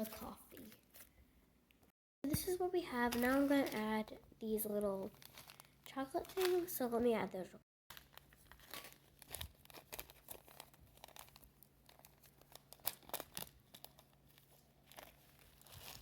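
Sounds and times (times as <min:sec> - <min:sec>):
slime crackling and popping: 0:07.9 - 0:16.0.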